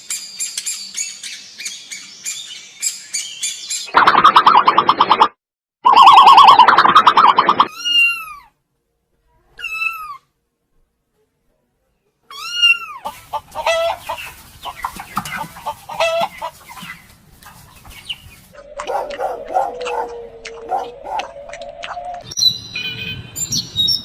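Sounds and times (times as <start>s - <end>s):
background noise: 5.9s - 24.0s
animal calls: 18.6s - 22.2s.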